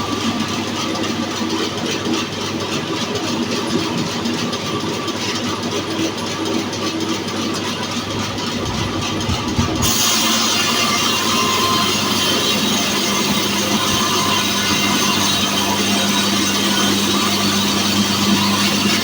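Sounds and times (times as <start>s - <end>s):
band saw cutting log: 8.5s - 19.0s.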